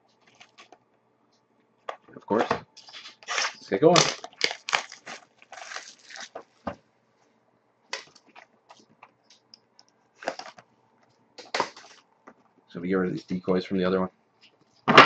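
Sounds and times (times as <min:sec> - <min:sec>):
plastic wrap tearing and crinkling: 0:02.9 - 0:06.6.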